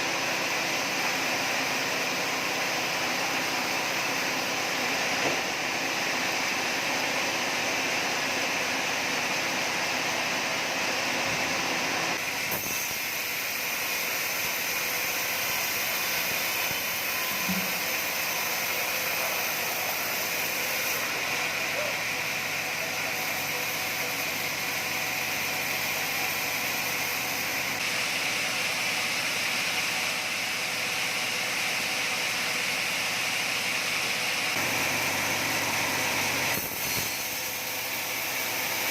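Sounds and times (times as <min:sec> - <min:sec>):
sawmill machinery running: 0:00.0 - 0:38.9.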